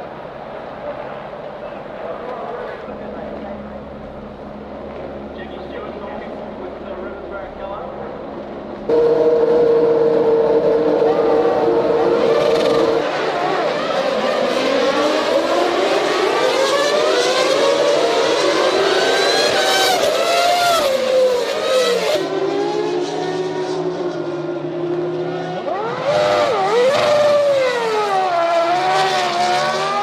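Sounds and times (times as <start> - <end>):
racing car engines at high revs: 8.8 - 30.0.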